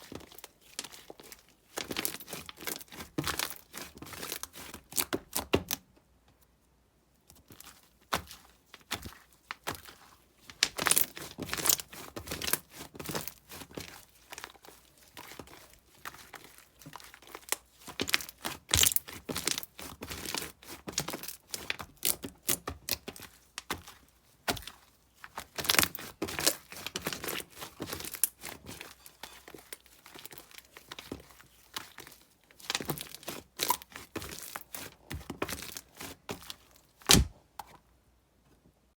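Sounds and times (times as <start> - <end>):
slime crackling and popping: 7.5 - 37.3.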